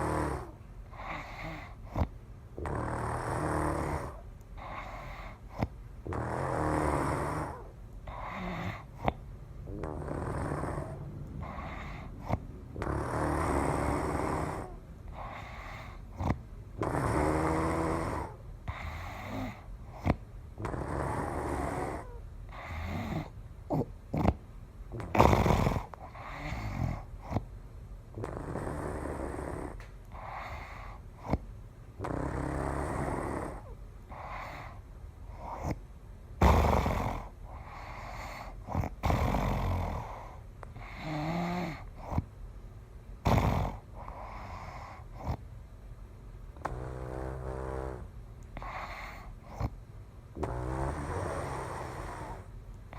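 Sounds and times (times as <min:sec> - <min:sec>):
person snoring: 0:00.0 - 0:24.4, 0:28.2 - 0:31.4, 0:32.0 - 0:34.8, 0:36.4 - 0:42.2, 0:46.6 - 0:49.7, 0:50.4 - 0:52.5
sharp snorts: 0:00.0 - 0:27.4, 0:32.0 - 0:34.8, 0:36.4 - 0:42.3, 0:43.2 - 0:45.4, 0:46.6 - 0:49.8, 0:50.4 - 0:52.5.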